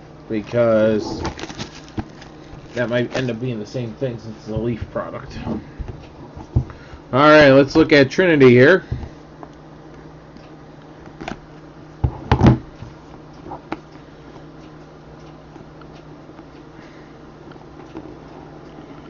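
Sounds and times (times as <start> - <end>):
low room hum: 0.0 - 19.0
handling knocks and rustles: 0.3 - 7.8.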